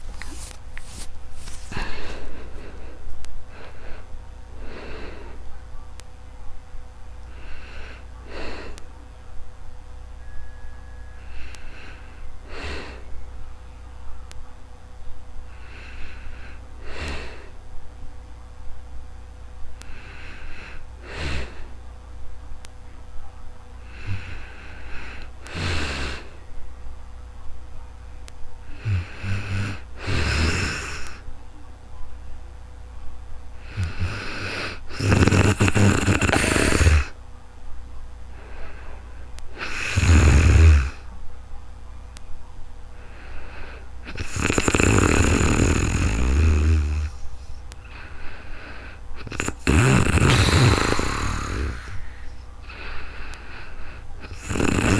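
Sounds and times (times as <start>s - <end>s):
woman snoring: 0.0s - 3.0s, 15.6s - 17.5s, 19.9s - 21.7s, 23.8s - 26.4s, 28.7s - 31.2s, 33.6s - 37.2s, 39.5s - 41.1s, 43.0s - 54.9s.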